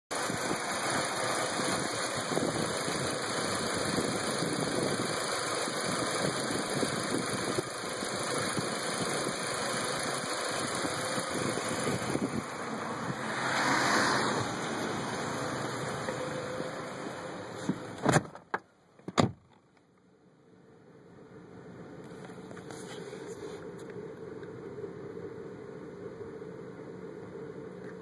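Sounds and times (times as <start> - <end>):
car engine idling rough: 0.1 - 18.5.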